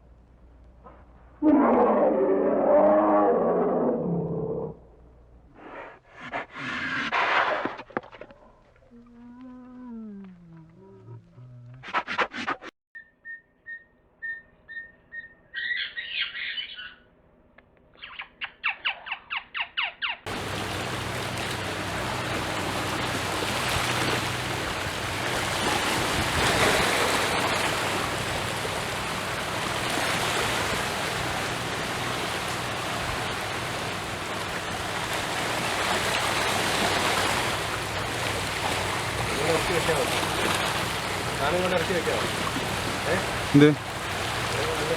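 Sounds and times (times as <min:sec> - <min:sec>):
harsh animal call: 0:01.4 - 0:04.8
animal high chirping calls: 0:13.0 - 0:17.0, 0:18.0 - 0:20.2.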